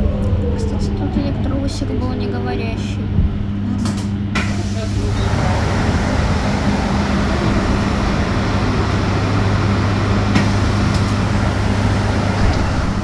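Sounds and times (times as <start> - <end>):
road and tyre noise: 4.4 - 13.0.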